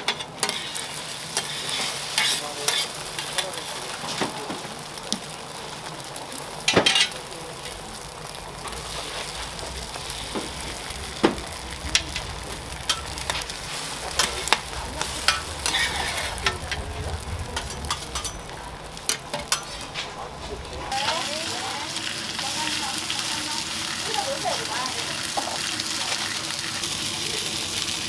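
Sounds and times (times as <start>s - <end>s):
food sizzling on a griddle: 0.0s - 28.0s
loud hit: 8.5s - 21.0s
cooking utensils clicking: 9.9s - 20.0s.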